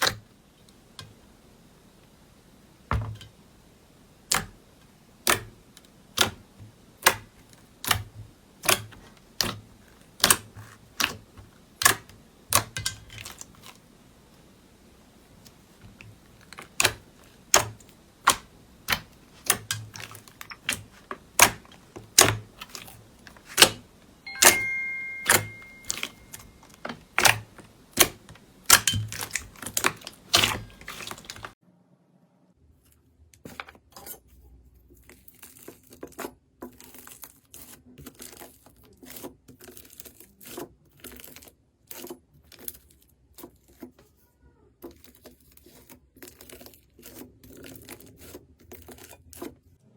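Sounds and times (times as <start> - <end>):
slime crackling: 15.3 - 23.8, 25.2 - 31.6
slime popping and clicking: 25.2 - 26.5.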